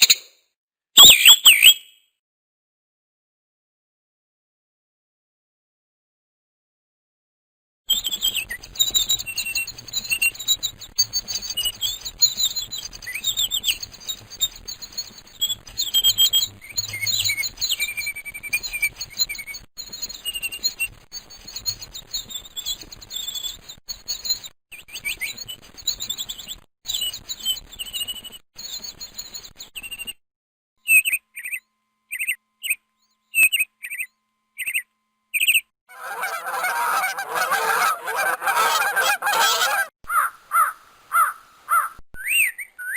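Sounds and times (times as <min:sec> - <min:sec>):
geese honking: 0:35.9 - 0:41.9.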